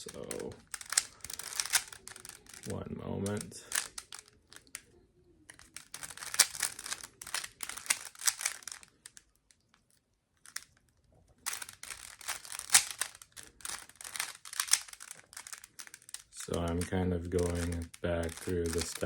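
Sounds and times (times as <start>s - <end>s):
puzzle cube clicking and clacking: 0.0s - 19.0s.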